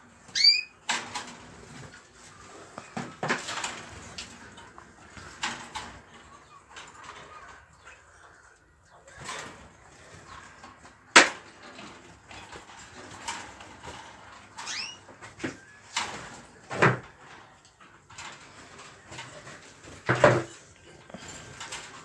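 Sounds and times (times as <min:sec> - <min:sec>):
small birds chirping: 0:00.2 - 0:00.9, 0:14.6 - 0:16.7.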